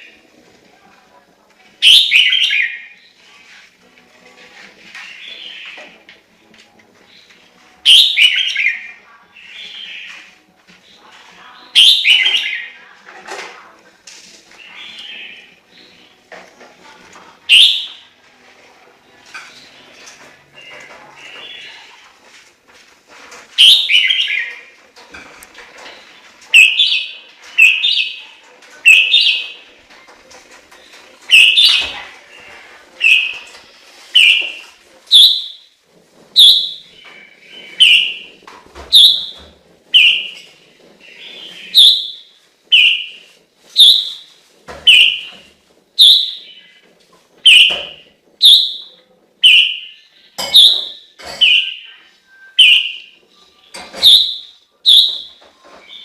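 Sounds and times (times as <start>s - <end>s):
bird singing whistled notes: 1.8s - 2.8s, 7.8s - 10.1s, 11.8s - 12.6s, 35.1s - 35.6s, 36.4s - 36.8s, 38.9s - 39.4s, 40.0s - 40.4s, 41.6s - 43.1s, 43.8s - 44.2s, 46.0s - 46.6s, 47.5s - 56.0s.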